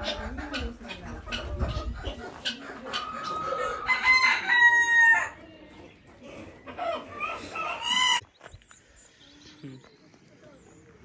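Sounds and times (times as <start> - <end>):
rooster crowing: 3.8 - 5.4.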